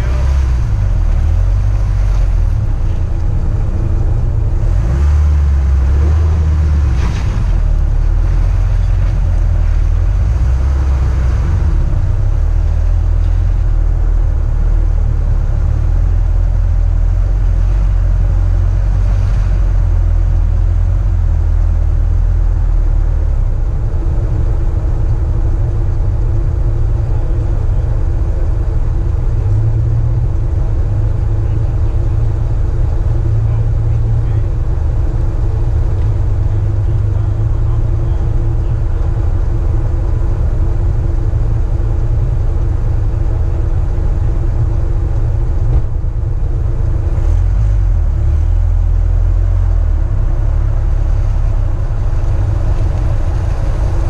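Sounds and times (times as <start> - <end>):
car engine low rumble: 0.0 - 54.0.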